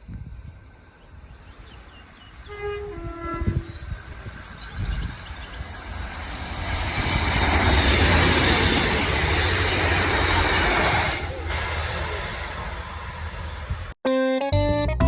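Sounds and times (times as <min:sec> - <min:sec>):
train passing close by: 0:00.0 - 0:14.0.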